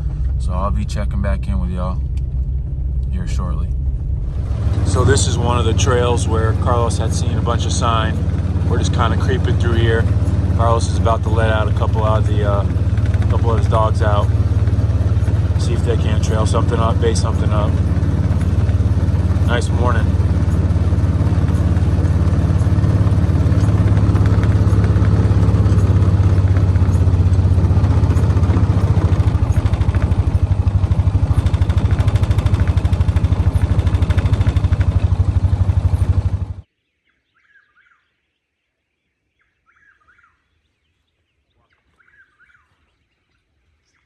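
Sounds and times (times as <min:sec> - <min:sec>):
vehicle engine running: 0:00.0 - 0:36.7
faint bird calls: 0:36.6 - 0:44.0.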